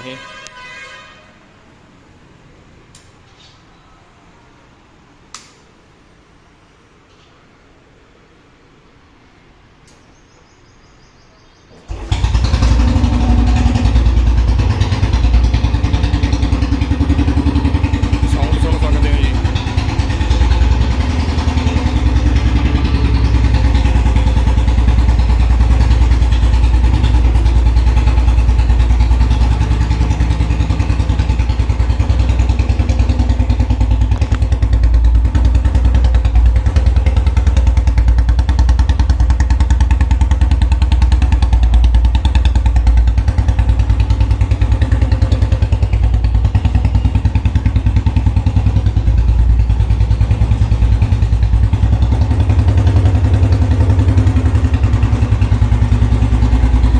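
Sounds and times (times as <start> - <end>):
motorcycle engine idling: 11.7 - 56.9.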